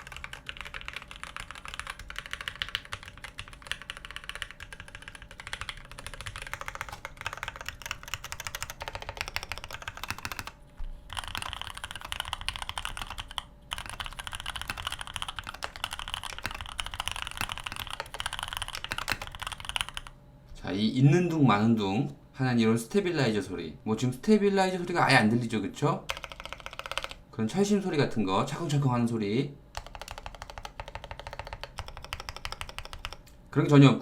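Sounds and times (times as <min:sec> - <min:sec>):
typing on mechanical keyboard: 0:00.0 - 0:20.1, 0:26.1 - 0:27.2, 0:29.7 - 0:33.3.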